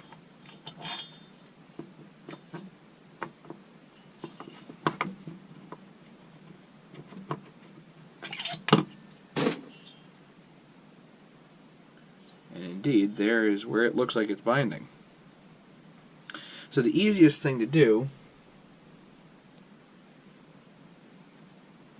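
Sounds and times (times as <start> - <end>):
metal clatter: 0.0 - 5.4, 8.2 - 10.0
metal parts clicking and knocking: 8.2 - 9.6.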